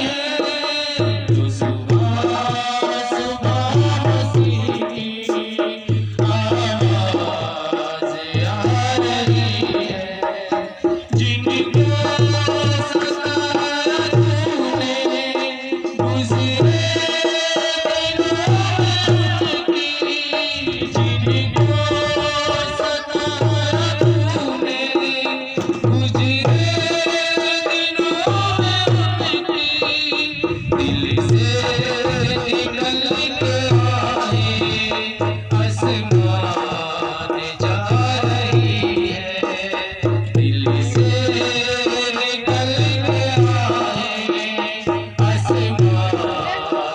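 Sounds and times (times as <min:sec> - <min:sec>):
devotional song melody: 0:00.0 - 0:46.9
tabla hand drumming: 0:00.0 - 0:46.9
low drum pattern: 0:17.9 - 0:46.6.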